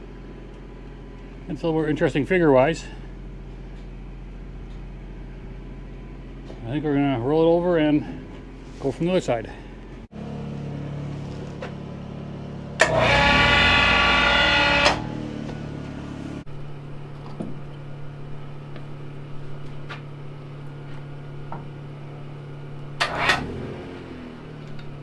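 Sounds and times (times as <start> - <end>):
steady low hum: 0.0 - 25.0
electric winch motor whining: 12.6 - 25.0.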